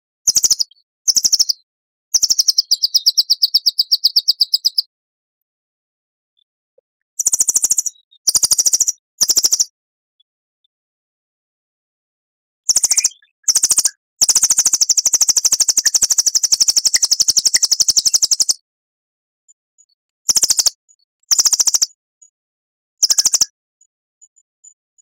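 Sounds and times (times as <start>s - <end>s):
songbird trilling: 0.3s - 1.6s, 2.2s - 4.9s, 12.7s - 18.6s, 20.3s - 22.0s, 23.0s - 23.5s.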